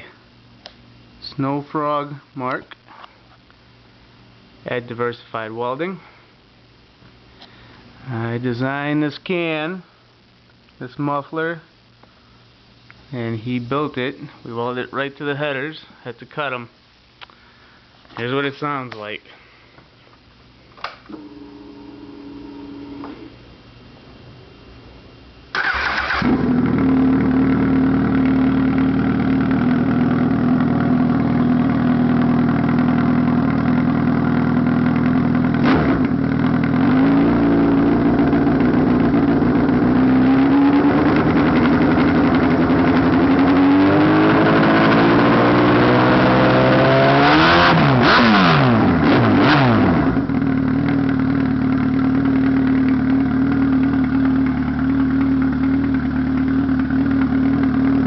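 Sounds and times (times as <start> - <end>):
motorcycle engine idling and revving: 25.8 - 58.0.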